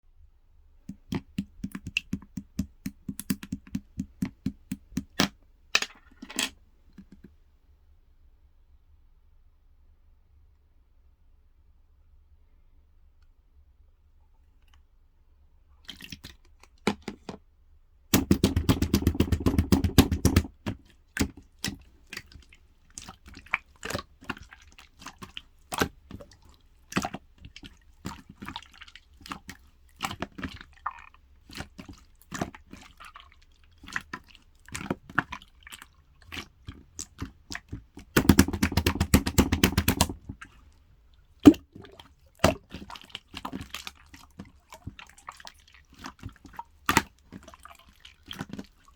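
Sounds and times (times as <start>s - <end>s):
slime air bubbles popping: 0.9s - 5.2s, 18.2s - 22.3s, 37.0s - 40.5s, 41.4s - 43.8s
slime sticky wet clicks: 0.9s - 5.3s, 18.2s - 30.7s, 33.9s - 40.6s, 41.4s - 45.0s, 45.9s - 47.5s.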